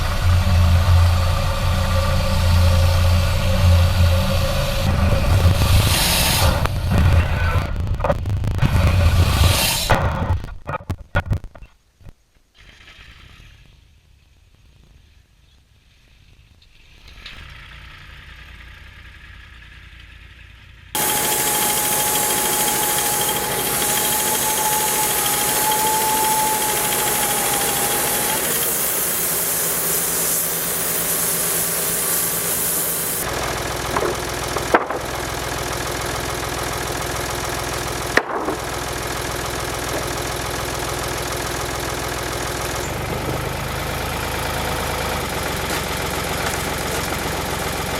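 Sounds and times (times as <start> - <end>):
engine running: 0.0 - 10.0, 16.8 - 47.9
low hum: 0.0 - 10.0
steady whine: 0.0 - 10.3, 21.0 - 47.9.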